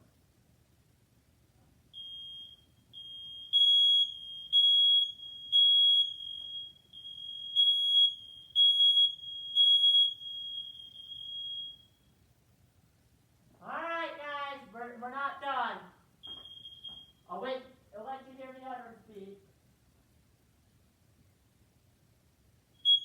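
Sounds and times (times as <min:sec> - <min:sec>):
smoke alarm beeping: 0:01.9 - 0:12.2, 0:16.2 - 0:17.3, 0:22.8 - 0:23.0.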